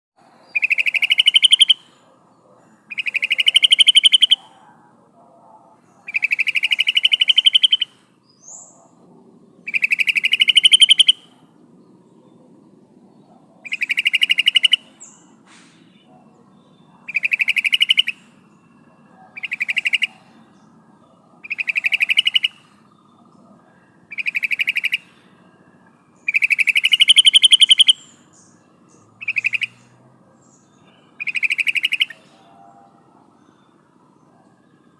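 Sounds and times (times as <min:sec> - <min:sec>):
bird chattering call: 0:00.5 - 0:02.1, 0:02.9 - 0:04.6, 0:06.0 - 0:08.0, 0:09.7 - 0:11.4, 0:13.6 - 0:15.2, 0:16.7 - 0:18.3, 0:19.3 - 0:20.7, 0:21.4 - 0:22.7, 0:24.1 - 0:25.2, 0:26.2 - 0:28.5, 0:29.2 - 0:29.9, 0:30.5 - 0:32.5.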